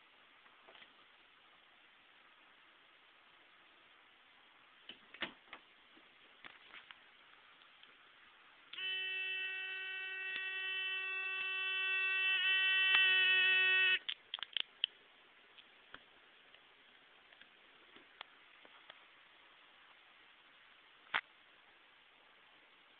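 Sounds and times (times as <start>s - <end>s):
electric alarm buzzing: 8.8s - 14.0s.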